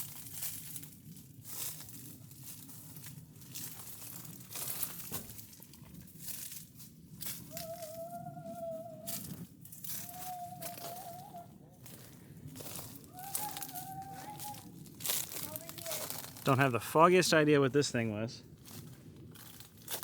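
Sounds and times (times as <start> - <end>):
wavering whistle-like tone: 7.5 - 11.6, 13.1 - 14.7
footsteps crunching on gravel: 9.1 - 20.0.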